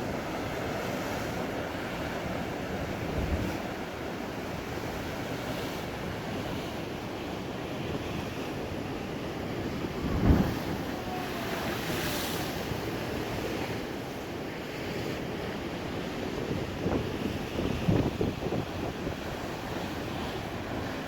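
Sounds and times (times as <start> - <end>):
hissing wash of surf: 0.0 - 21.0
rough sea breaking: 0.0 - 21.0
wind buffeting microphone: 9.6 - 11.0, 16.3 - 21.0.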